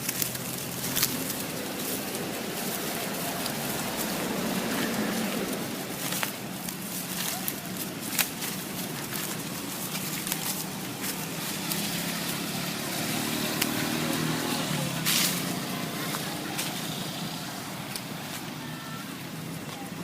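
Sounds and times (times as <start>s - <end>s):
outdoor background noise: 0.0s - 20.0s
vehicle engine rumble passing: 0.0s - 20.0s
scattered clicks: 17.8s - 18.5s.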